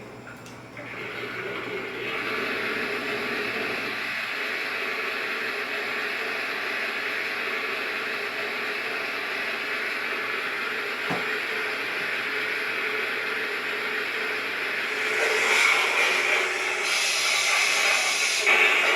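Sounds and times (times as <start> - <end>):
click: 0.3 - 0.8
steam hiss from small speaker: 14.8 - 18.9.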